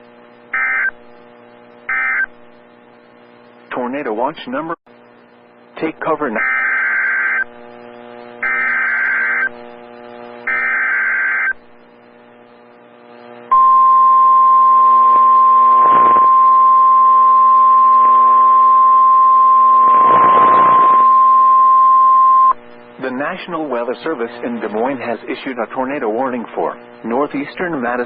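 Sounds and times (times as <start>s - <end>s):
static bursts: 0.0s - 25.7s
steady hum: 0.0s - 28.0s
digital data tones screeching: 1.9s - 2.3s, 6.3s - 7.5s, 8.4s - 9.5s, 10.5s - 11.6s, 14.9s - 22.6s
single-pitch warning alarm tone: 1.9s - 2.3s, 8.4s - 9.5s, 10.4s - 11.6s, 13.5s - 22.6s.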